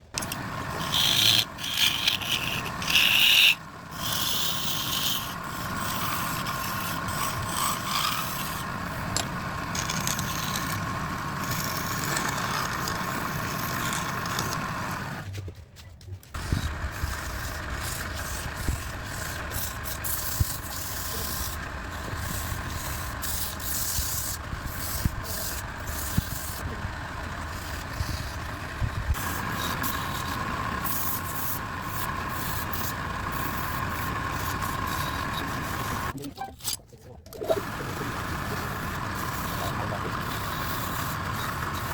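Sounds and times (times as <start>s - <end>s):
machine hum: 0.0s - 15.3s, 16.4s - 36.2s, 37.4s - 41.9s
scraping on wood: 0.2s - 15.5s.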